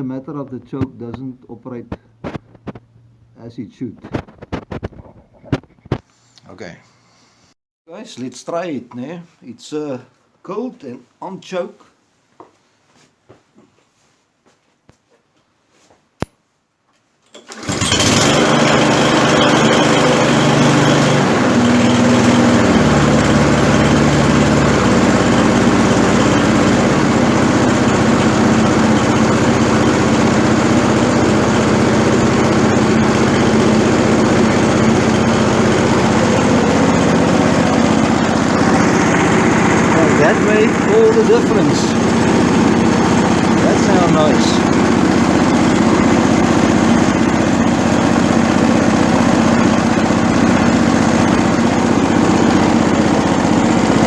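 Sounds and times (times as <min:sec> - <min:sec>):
lawn mower engine running: 0:17.4 - 0:54.0.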